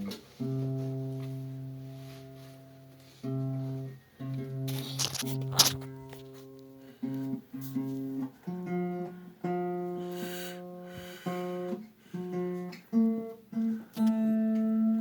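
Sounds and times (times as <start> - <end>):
acoustic guitar strumming chords: 11.5 - 15.0.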